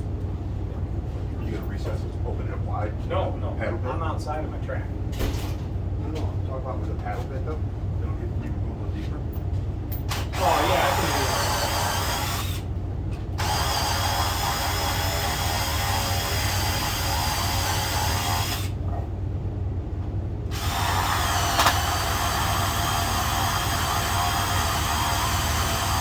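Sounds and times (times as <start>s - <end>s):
power drill boring into wood: 10.2s - 12.6s, 13.4s - 18.7s, 20.5s - 26.0s.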